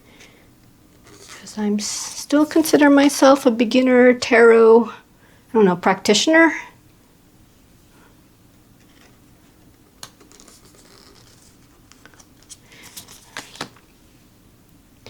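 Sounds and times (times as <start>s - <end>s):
cards rustling: 1.0s - 1.5s, 10.0s - 13.9s
cards clicking and snapping: 10.0s - 13.8s.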